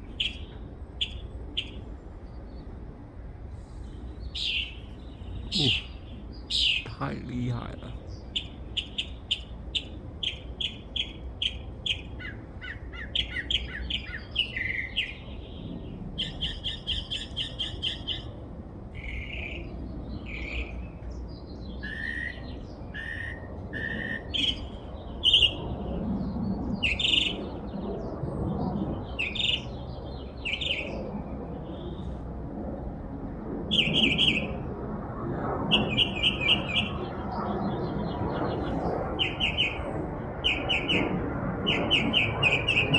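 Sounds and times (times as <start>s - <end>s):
songbird singing: 3.8s - 18.3s.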